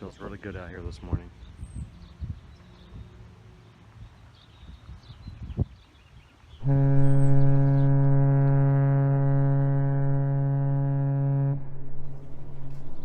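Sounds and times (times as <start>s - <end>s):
long low horn blast: 6.6s - 13.0s.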